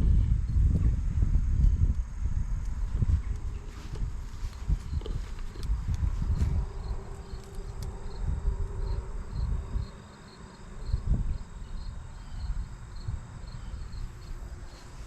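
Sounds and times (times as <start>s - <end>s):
low rumbling: 0.0s - 10.0s
insect chirping: 0.0s - 15.0s.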